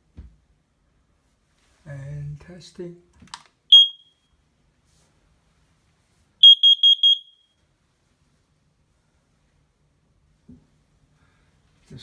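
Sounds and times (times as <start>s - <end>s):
high alarm beeps: 3.7s - 4.1s, 6.4s - 7.4s.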